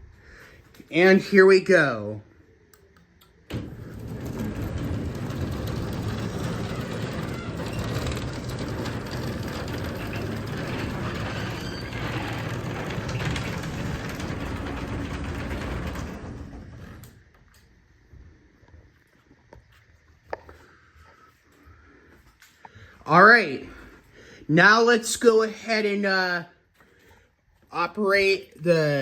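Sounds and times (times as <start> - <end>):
garage door opener rumbling: 3.5 - 17.4.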